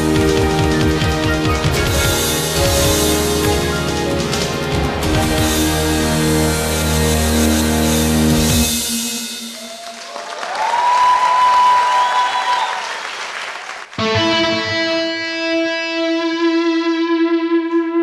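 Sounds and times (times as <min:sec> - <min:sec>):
electric guitar with effects: 0:14.0 - 0:18.0.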